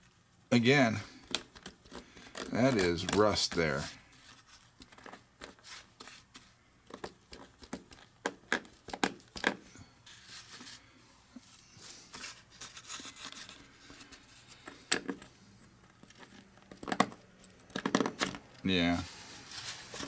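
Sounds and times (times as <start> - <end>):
rubbing or scraping: 18.9 - 20.0.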